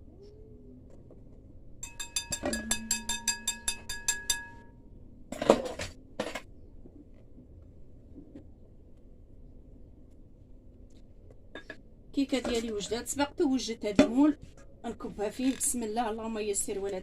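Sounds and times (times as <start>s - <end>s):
dishware clattering knocks: 1.8s - 4.7s
utensil tapping metal bowl: 1.8s - 4.7s.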